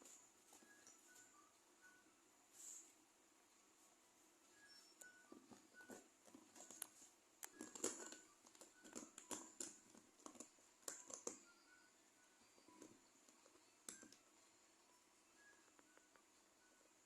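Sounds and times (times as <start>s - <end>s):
kittens' paws scuffing and tapping: 5.3s - 11.4s.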